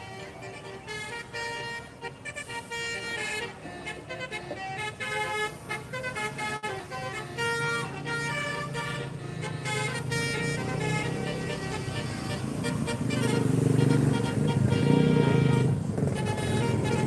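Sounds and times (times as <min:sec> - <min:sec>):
bus engine running: 0:00.0 - 0:17.0
multi-tone bus horn melody: 0:00.0 - 0:17.0.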